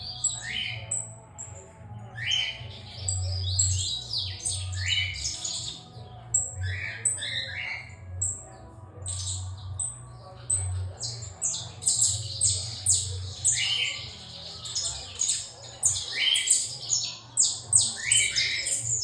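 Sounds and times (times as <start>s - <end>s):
bird singing: 0.0s - 19.0s.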